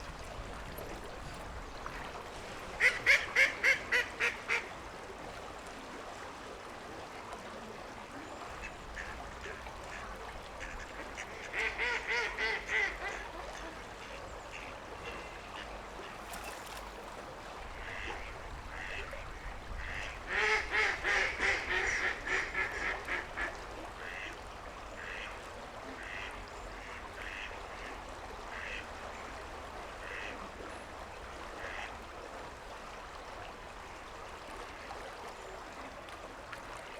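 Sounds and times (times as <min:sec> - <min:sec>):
ducks quacking: 0:02.8 - 0:04.7.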